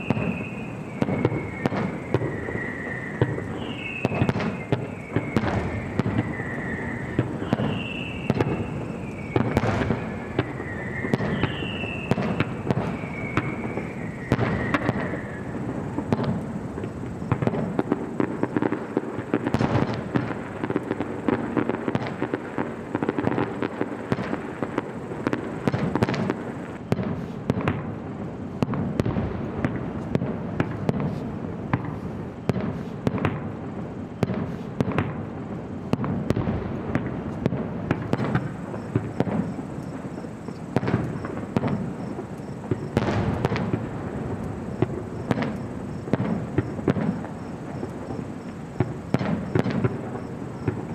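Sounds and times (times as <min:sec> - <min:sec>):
fireworks bangs and pops: 0:00.0 - 0:50.9
rumble of fireworks launches: 0:00.0 - 0:50.9.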